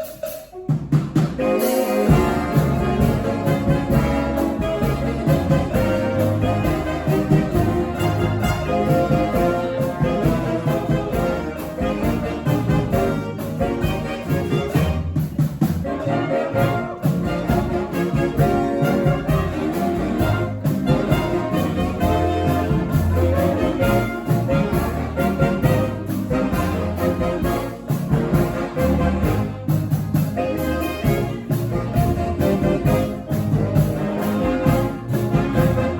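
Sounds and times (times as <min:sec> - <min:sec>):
percussion beat: 0:00.0 - 0:35.9
trumpets and trombones: 0:00.0 - 0:35.9.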